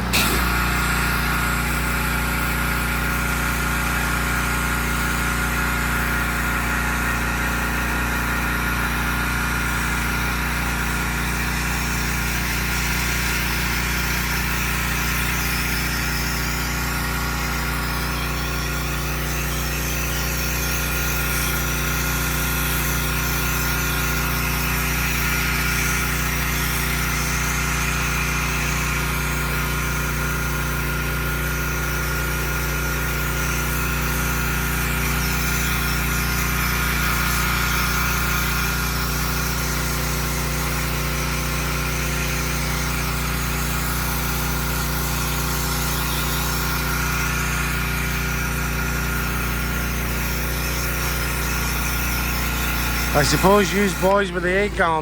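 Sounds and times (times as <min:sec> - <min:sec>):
pump drone with whine: 0:00.0 - 0:55.0
spray hissing: 0:11.9 - 0:29.6, 0:41.8 - 0:55.0.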